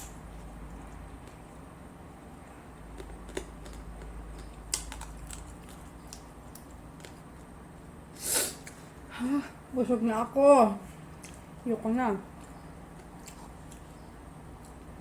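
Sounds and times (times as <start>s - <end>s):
chewing food: 0.2s - 7.6s, 10.9s - 15.0s
breathy puff: 8.2s - 8.6s.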